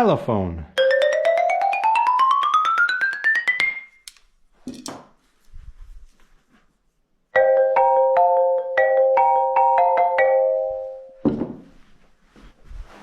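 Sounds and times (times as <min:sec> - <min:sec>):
ringtone-like mallet melody: 0:00.8 - 0:04.0, 0:07.4 - 0:11.2
xylophone run: 0:00.8 - 0:04.0, 0:07.4 - 0:11.1.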